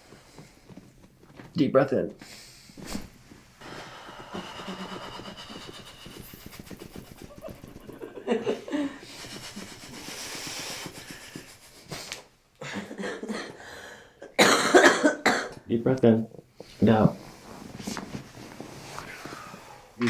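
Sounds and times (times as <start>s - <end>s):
person breathing heavily: 2.2s - 14.4s, 18.9s - 20.0s
soft laughter: 4.4s - 11.8s.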